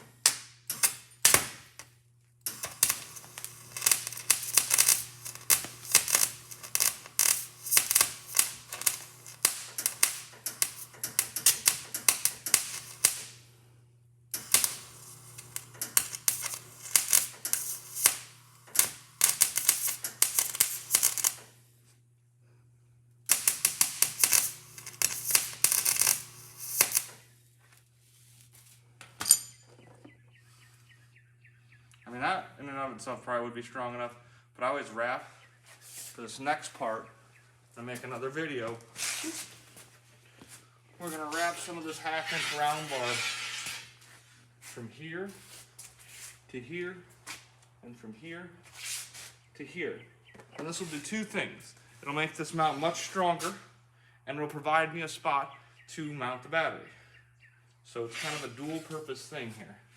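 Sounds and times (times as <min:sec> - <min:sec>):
arc welder crackling: 0:00.0 - 0:13.6, 0:14.3 - 0:21.7, 0:23.2 - 0:27.9, 0:37.8 - 0:44.0, 0:58.0 - 0:59.5
steady low hum: 0:02.4 - 0:35.6.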